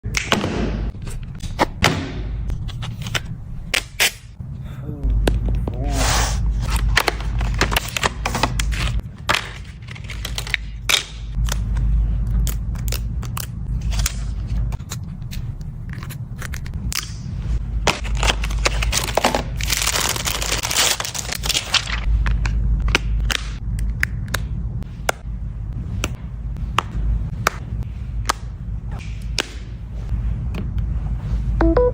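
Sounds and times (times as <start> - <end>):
packaging being opened by hand: 6.6 - 15.0, 17.8 - 23.6.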